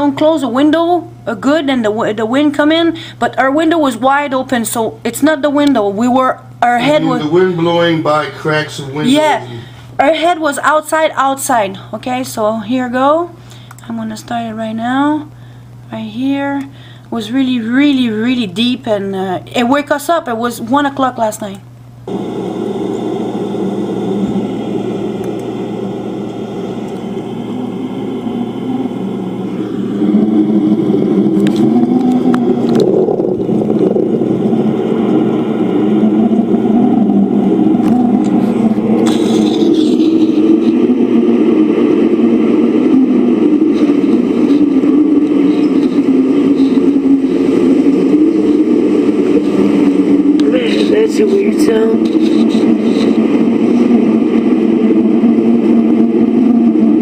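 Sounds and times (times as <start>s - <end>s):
deep rushing roar from sky: 22.1s - 57.0s
deep wind-like drone: 22.1s - 57.0s.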